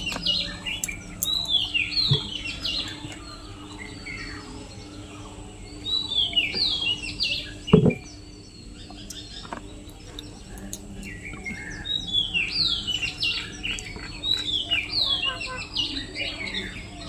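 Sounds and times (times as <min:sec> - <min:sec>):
bird chirping: 0:00.0 - 0:17.0
dull knock: 0:07.8 - 0:08.0.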